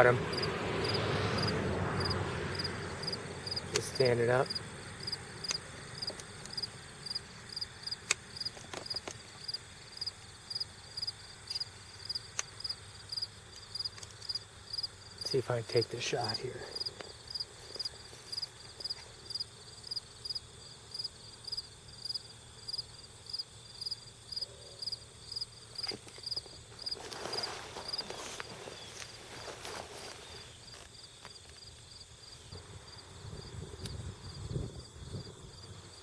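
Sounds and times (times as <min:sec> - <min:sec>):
insect chirping: 0:00.3 - 0:36.0
rustling noise: 0:25.8 - 0:31.9.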